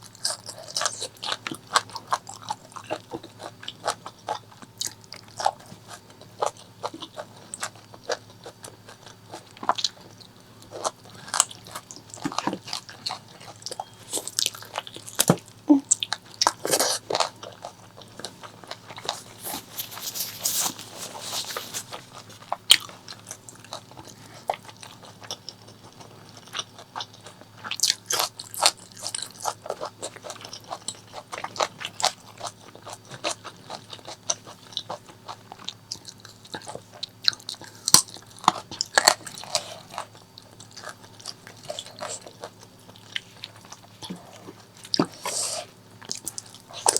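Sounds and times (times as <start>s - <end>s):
chewing with wet mouth smacks: 0.0s - 46.9s
crunching: 16.1s - 34.2s.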